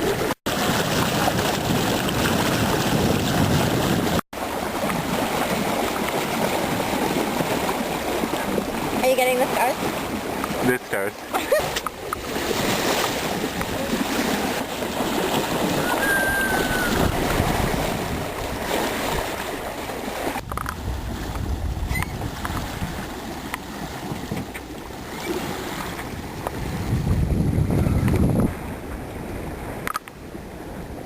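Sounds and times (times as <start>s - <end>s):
water washing along hull: 0.0s - 31.0s
wind buffeting microphone: 0.8s - 4.2s, 11.6s - 19.6s, 20.4s - 31.0s.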